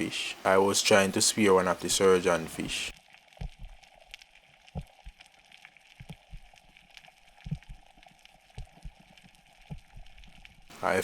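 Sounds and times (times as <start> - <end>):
underwater clicks and crackle: 2.9 - 10.7
low underwater thumps: 3.4 - 3.8, 4.7 - 5.2, 6.0 - 6.5, 7.4 - 7.9, 8.5 - 9.0, 9.6 - 10.7.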